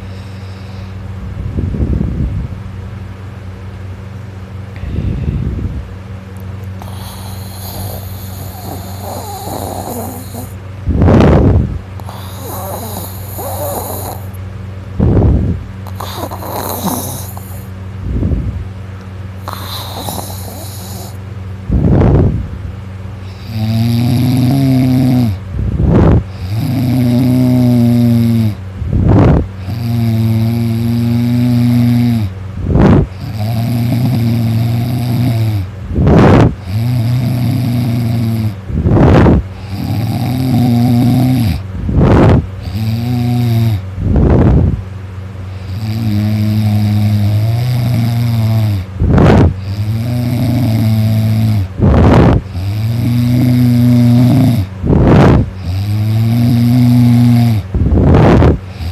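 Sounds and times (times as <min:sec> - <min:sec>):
hissing breaths: 0:00.0 - 0:01.1, 0:04.7 - 0:05.6, 0:06.6 - 0:10.6, 0:12.0 - 0:14.4, 0:15.8 - 0:17.8, 0:19.4 - 0:21.2, 0:45.5 - 0:58.9
steady low hum: 0:00.0 - 0:58.9
person snoring loudly: 0:06.8 - 0:10.6, 0:12.0 - 0:14.4, 0:15.8 - 0:17.7, 0:19.4 - 0:21.2, 0:23.2 - 0:44.7, 0:45.5 - 0:58.9.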